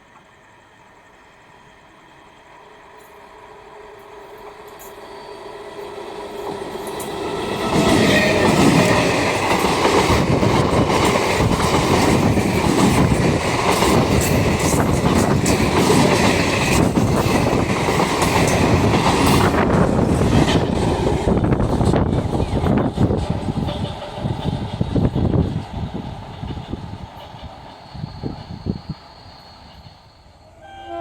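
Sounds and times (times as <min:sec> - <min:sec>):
train passing: 0:00.0 - 0:31.0
train wheels clattering on rails: 0:05.8 - 0:30.1.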